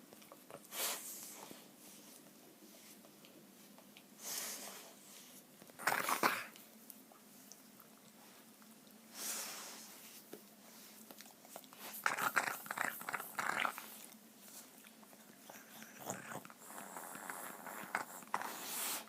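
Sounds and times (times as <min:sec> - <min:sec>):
pet animal making noises: 0:11.2 - 0:14.2, 0:14.8 - 0:19.0.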